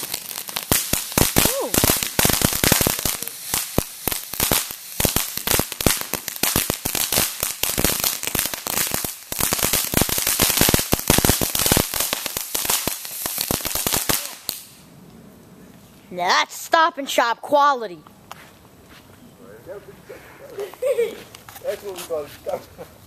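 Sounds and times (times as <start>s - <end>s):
firework crackling pops: 0.0s - 14.9s.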